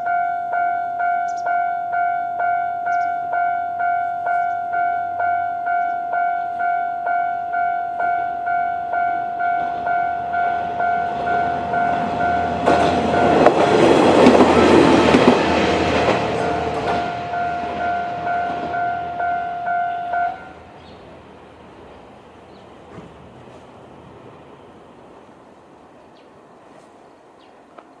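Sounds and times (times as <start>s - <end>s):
level crossing bell ringing: 0.0s - 13.6s, 16.4s - 20.6s
diesel railcar running: 0.0s - 28.0s
wheels clicking over rail joints: 9.5s - 24.4s.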